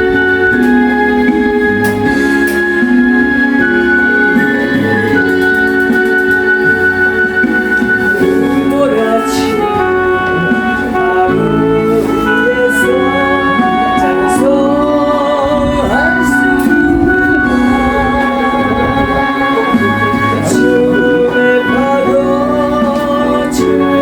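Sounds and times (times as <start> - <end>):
gospel hymn instrumental: 0.0 - 24.0.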